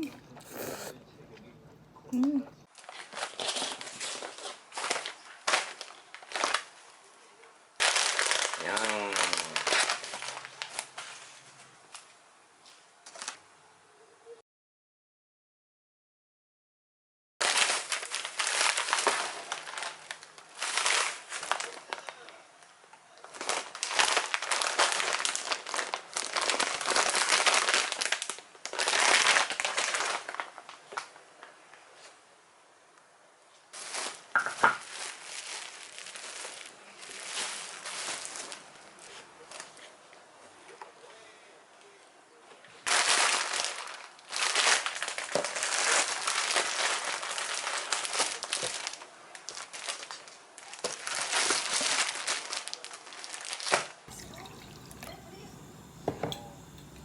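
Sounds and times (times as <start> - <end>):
packaging crumpled by hand: 2.8 - 6.8, 7.8 - 11.3, 17.4 - 22.1, 23.3 - 30.6, 34.9 - 38.6, 42.9 - 53.8.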